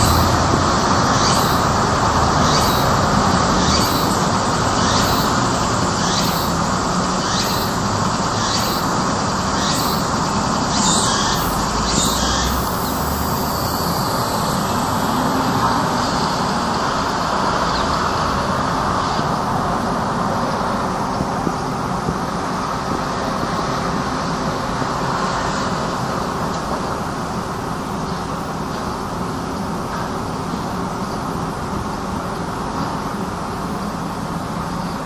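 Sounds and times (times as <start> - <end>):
traffic noise: 0.0 - 35.0.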